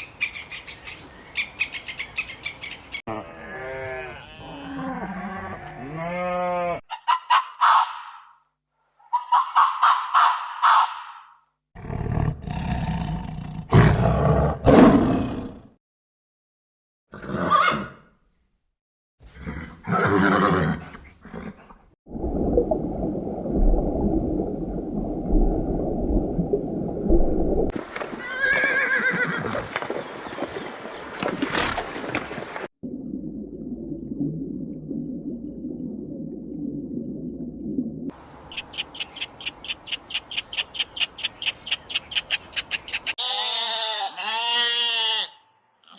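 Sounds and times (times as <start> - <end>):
animal roaring calls: 3.1 - 6.8
pitched animal call: 3.1 - 8.3, 38.5 - 45.9.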